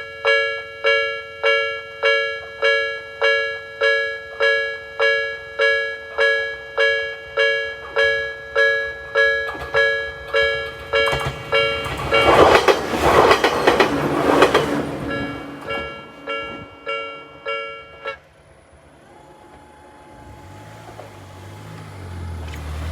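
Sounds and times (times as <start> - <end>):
level crossing bell clanging: 0.0 - 18.2
train clattering through crossing: 0.0 - 22.9.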